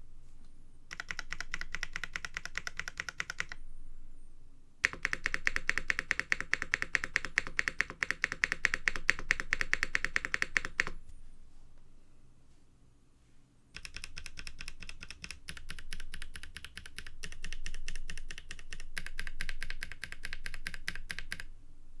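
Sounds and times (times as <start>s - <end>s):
thocky mechanical keyboard clacks: 0.9s - 3.6s, 4.8s - 11.0s, 13.8s - 21.5s.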